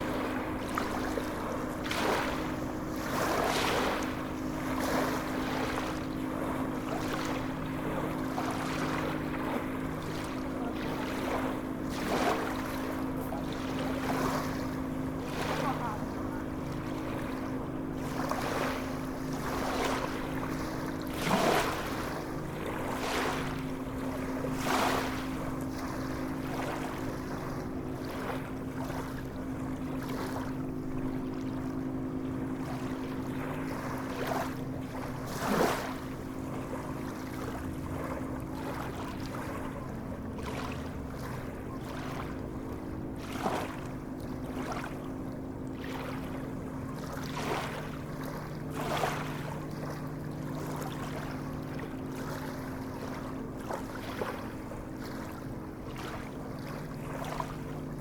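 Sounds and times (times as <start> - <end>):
sea waves surging: 0.0 - 45.1, 45.7 - 58.0
steady low hum: 0.0 - 58.0.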